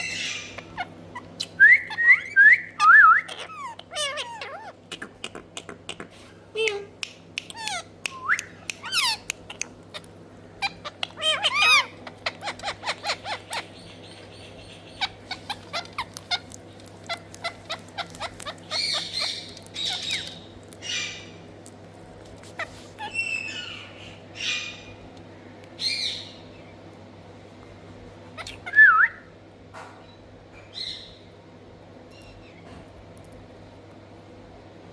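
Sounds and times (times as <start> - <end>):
parakeet calling: 0.0 - 6.2, 7.5 - 21.4, 22.4 - 25.1, 25.8 - 26.7, 28.3 - 29.2
steady low hum: 0.0 - 34.9.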